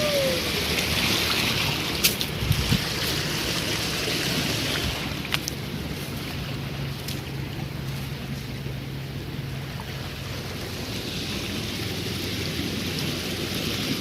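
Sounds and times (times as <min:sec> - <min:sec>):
waterfall rushing: 0:00.0 - 0:05.8, 0:09.6 - 0:14.0.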